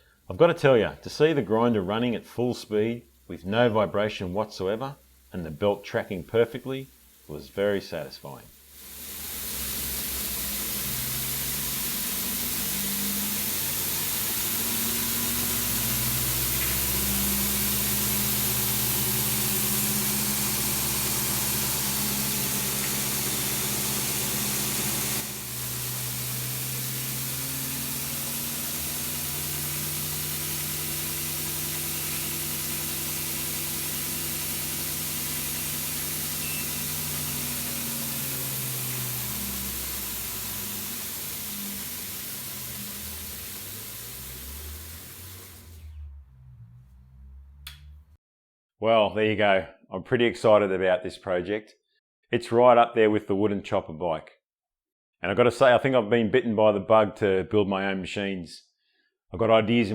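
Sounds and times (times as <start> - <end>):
grinder belt hiss: 2.6 - 46.0
motor hum: 8.5 - 48.2.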